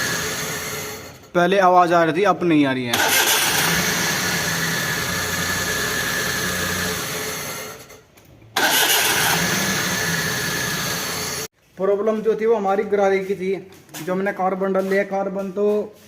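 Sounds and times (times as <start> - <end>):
car engine idling: 2.9 - 7.9.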